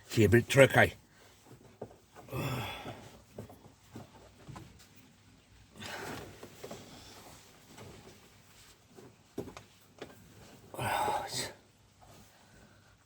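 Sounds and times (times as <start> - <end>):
man breathing out heavily: 2.3 - 3.2.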